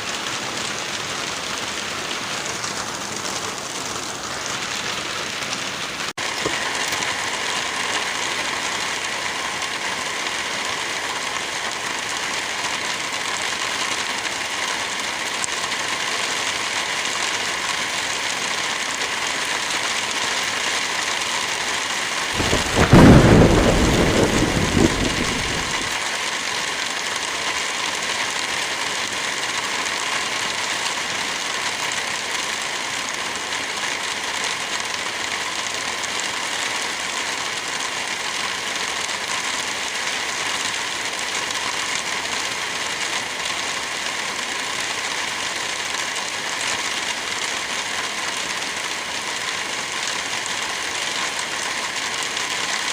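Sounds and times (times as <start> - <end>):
steady rain hiss: 0.0 - 52.9
low thunder rumble: 22.4 - 26.0.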